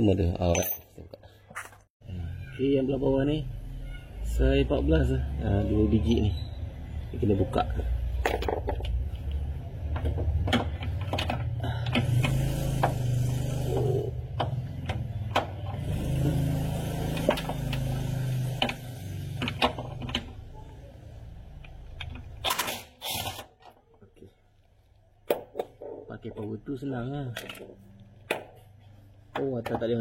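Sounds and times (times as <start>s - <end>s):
metal clinks and knocks: 0.4s - 1.1s
power tool motor humming: 12.0s - 14.2s, 15.7s - 19.4s.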